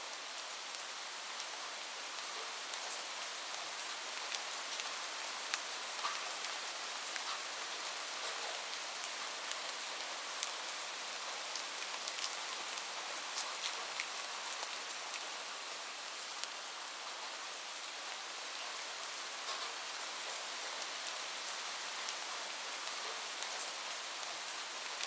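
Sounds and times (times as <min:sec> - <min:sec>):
rain hissing on a roof: 0:00.0 - 0:25.0.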